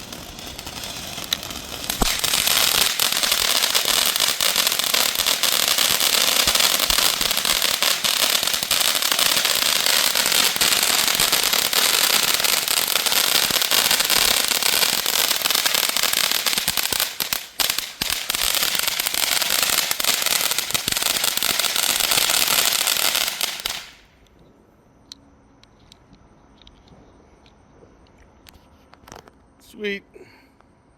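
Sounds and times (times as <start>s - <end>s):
firework fountain hissing and crackling: 0.0s - 24.2s.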